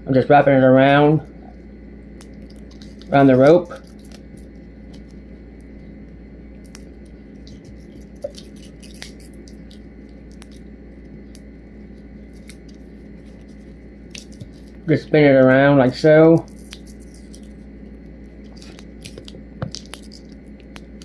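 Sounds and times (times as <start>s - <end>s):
steady low hum: 0.0s - 21.0s
tape wrapping clicks and rustles: 18.5s - 21.0s.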